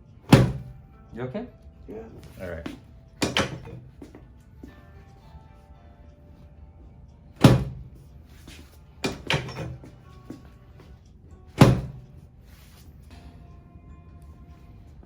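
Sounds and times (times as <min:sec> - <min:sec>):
soft background music: 0:00.0 - 0:15.0
heavy thumps on treatment table: 0:00.3 - 0:00.8, 0:02.2 - 0:04.3, 0:07.4 - 0:10.5, 0:11.6 - 0:12.1.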